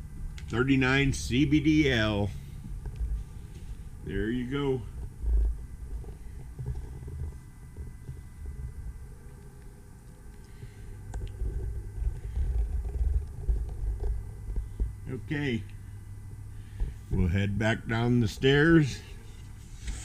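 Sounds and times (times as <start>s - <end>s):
handheld camera handling rumble: 2.5s - 15.0s.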